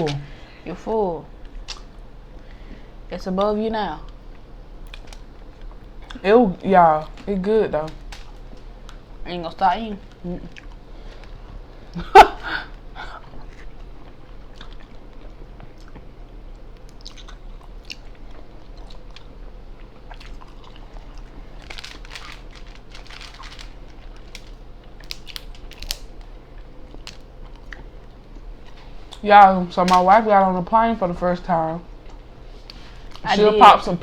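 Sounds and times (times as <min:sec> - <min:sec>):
chewing: 0:04.0 - 0:06.2, 0:10.0 - 0:12.0, 0:12.6 - 0:29.2
crab shells cracking: 0:04.0 - 0:06.2, 0:07.0 - 0:09.1, 0:16.6 - 0:29.2.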